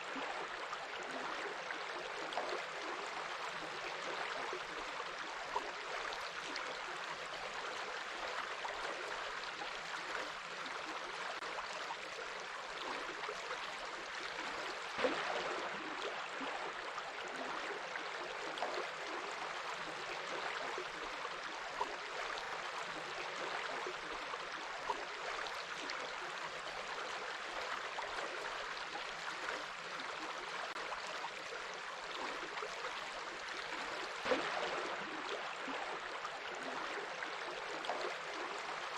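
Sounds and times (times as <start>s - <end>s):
water splashes: 14.5s - 19.2s, 32.1s - 38.9s.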